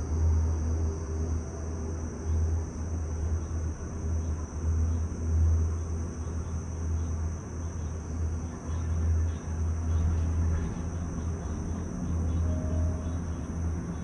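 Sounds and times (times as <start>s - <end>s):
high-pitched hum: 7.6s - 14.0s
gondola cabin rumbling on cable: 8.0s - 14.0s.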